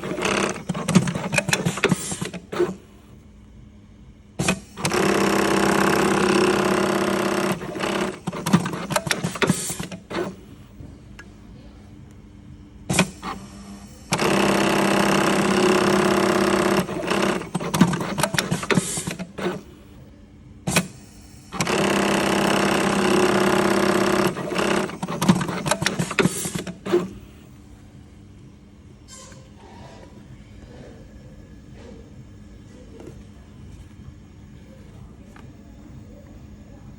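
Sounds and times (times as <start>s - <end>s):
sewing machine running: 0.0s - 3.0s, 4.4s - 10.6s, 12.9s - 20.0s, 20.7s - 27.4s.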